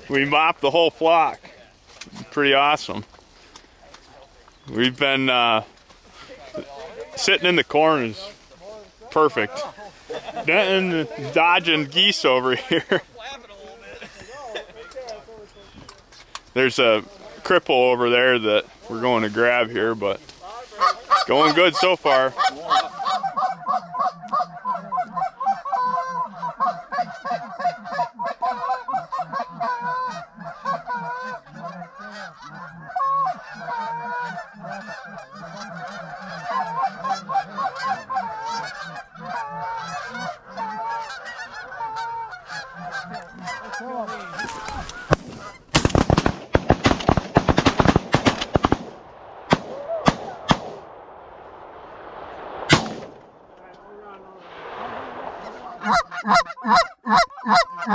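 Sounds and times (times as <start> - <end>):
geese honking: 0.0 - 46.1, 52.6 - 57.9
shotgun blasts: 45.1 - 53.6.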